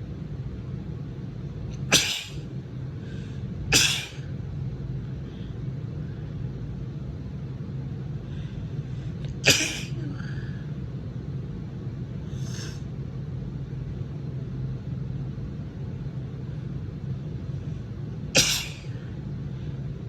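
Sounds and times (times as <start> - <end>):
steady low hum: 0.0 - 20.0
woman sneezing: 1.9 - 2.4, 3.8 - 4.2, 18.4 - 19.0.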